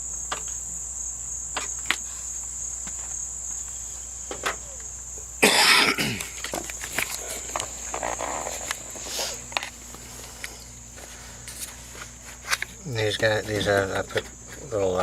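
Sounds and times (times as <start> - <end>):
person coughing: 5.4 - 6.4.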